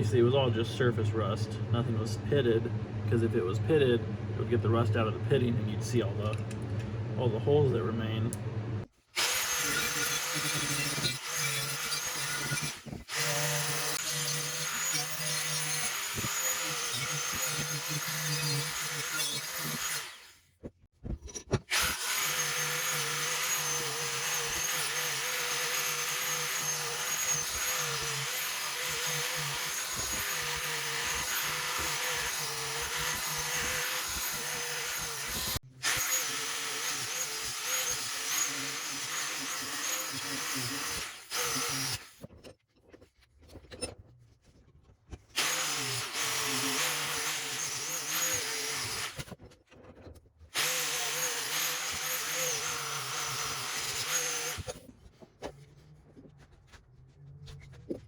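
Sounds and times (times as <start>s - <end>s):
electric drill whining: 9.2s - 20.4s, 21.7s - 42.2s, 45.4s - 49.3s, 50.6s - 54.8s.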